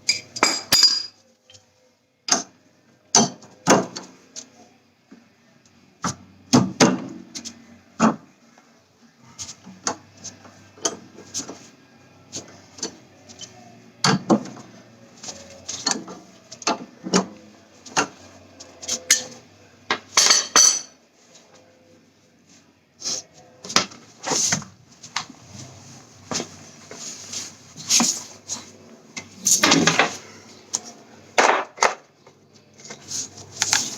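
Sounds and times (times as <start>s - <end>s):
metal tools clinking and knocking: 0.0s - 1.6s, 20.0s - 21.0s.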